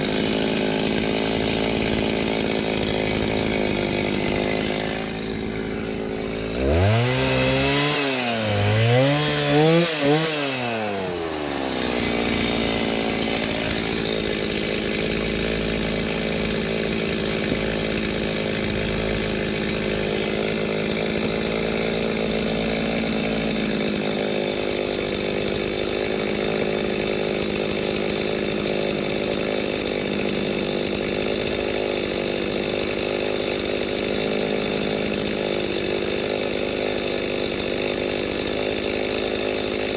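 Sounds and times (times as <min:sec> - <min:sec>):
chainsaw revving and cutting log: 0:00.0 - 0:39.9.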